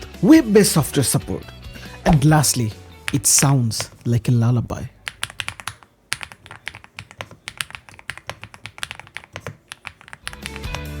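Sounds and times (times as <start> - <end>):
music: 0.0 - 3.8, 10.2 - 11.0
mechanical keyboard typing: 2.1 - 4.3, 5.0 - 11.0.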